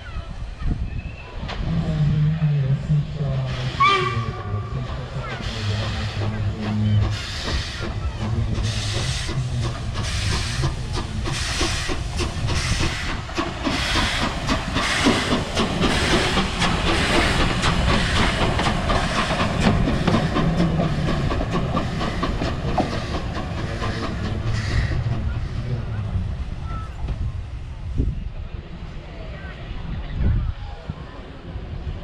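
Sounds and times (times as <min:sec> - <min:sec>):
steam hissing: 0:02.9 - 0:27.6
steam locomotive exhaust chuffs: 0:03.1 - 0:28.2.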